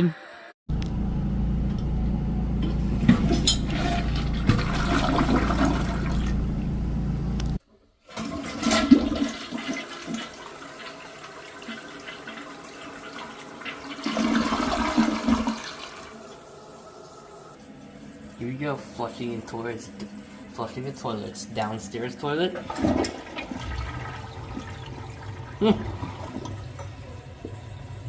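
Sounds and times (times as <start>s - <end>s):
steady low hum: 0.7s - 7.6s
toilet flushing: 2.6s - 6.7s, 8.0s - 28.0s.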